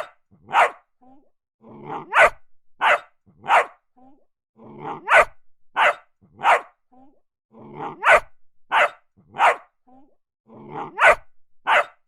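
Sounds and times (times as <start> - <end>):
dog barking: 0.0 - 0.9, 2.0 - 3.8, 4.9 - 6.8, 7.9 - 9.8, 10.8 - 12.0.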